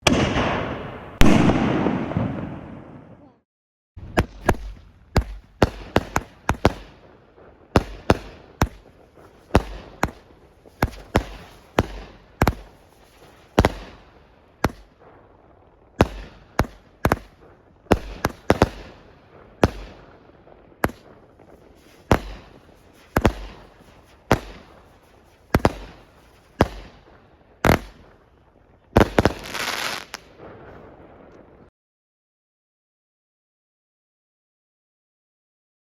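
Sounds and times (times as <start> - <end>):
firework cake bangs: 4.0 - 15.2, 15.9 - 28.2, 28.9 - 30.8.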